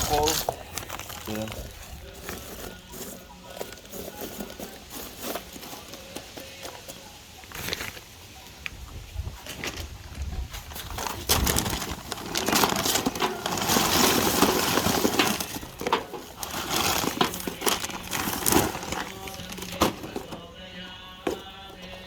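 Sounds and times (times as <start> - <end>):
charcoal lumps clattering: 0.0 - 22.0.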